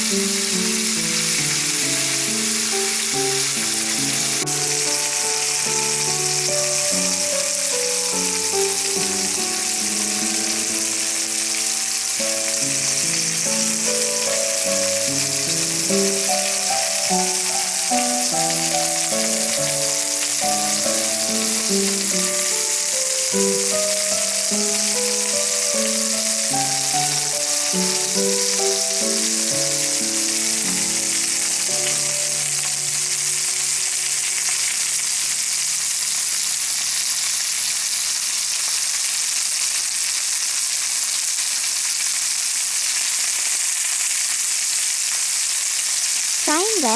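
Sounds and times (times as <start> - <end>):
instrumental background music: 0.0 - 35.0
meat sizzling in a pan: 0.0 - 46.9.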